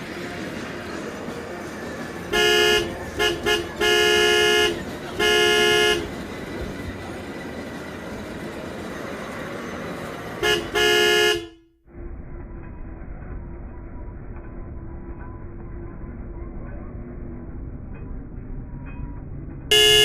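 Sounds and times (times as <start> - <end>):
toy electronic horn beeping: 2.3 - 6.2, 10.4 - 11.6, 19.7 - 20.0.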